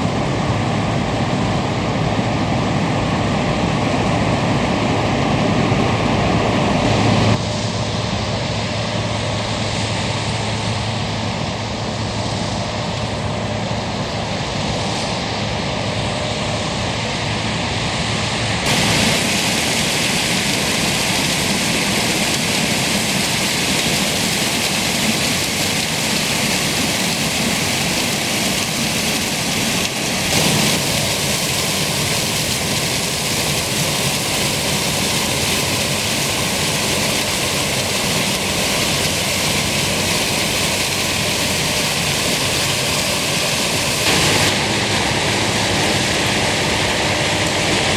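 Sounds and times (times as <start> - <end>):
combine harvester engine and threshing: 0.0 - 47.9.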